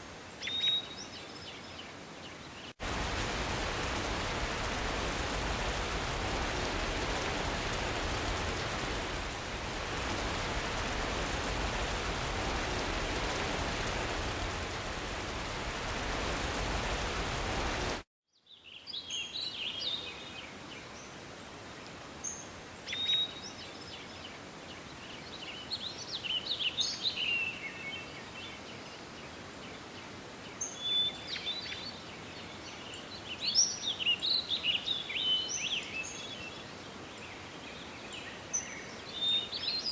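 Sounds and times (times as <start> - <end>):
steady rushing noise: 2.8 - 18.1.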